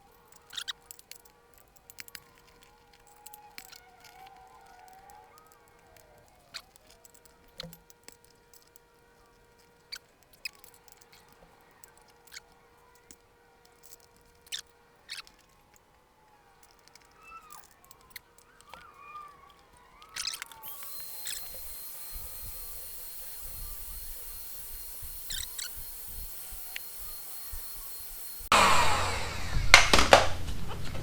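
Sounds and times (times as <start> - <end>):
rubber squeaks: 0.0 - 1.3, 1.9 - 15.9, 16.5 - 28.5
faint steady hum: 0.0 - 29.9.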